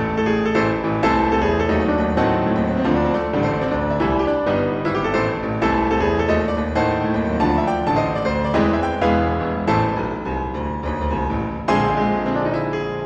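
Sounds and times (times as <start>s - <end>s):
piano music over bass: 0.0s - 13.0s.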